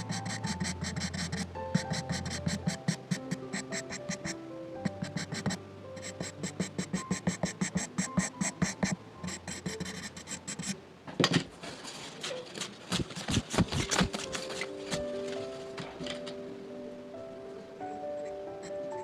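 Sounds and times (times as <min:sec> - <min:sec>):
charcoal pencil scratching on paper: 0:00.0 - 0:10.8, 0:12.6 - 0:15.0.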